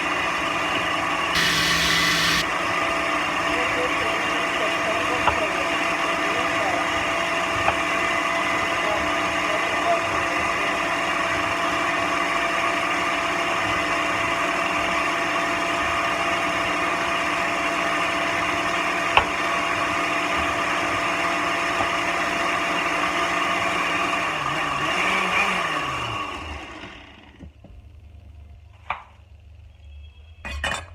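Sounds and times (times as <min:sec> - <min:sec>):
blender motor winding down: 0:01.4 - 0:02.4, 0:24.3 - 0:27.3
blender running: 0:01.4 - 0:02.4, 0:22.5 - 0:27.3.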